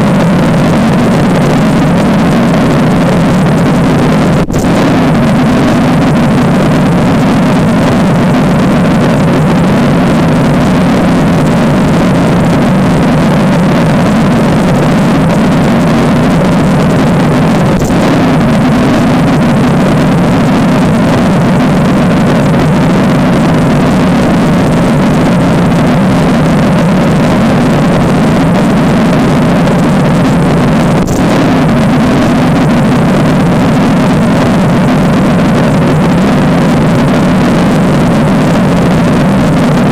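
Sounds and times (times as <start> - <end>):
loud low drone: 0.0 - 39.9.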